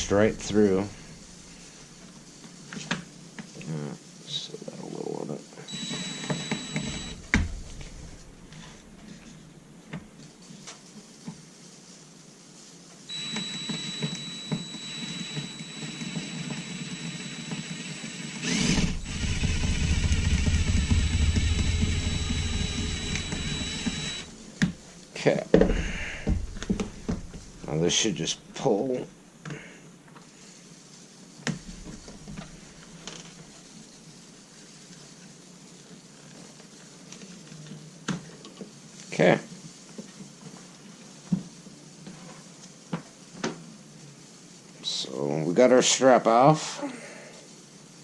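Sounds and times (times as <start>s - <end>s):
electric drill whining: 5.7s - 8.1s, 13.1s - 24.4s.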